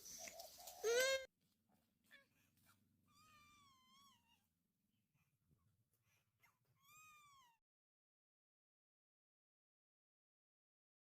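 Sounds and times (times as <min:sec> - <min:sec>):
cat meowing faintly: 0:03.1 - 0:04.5, 0:06.6 - 0:07.6.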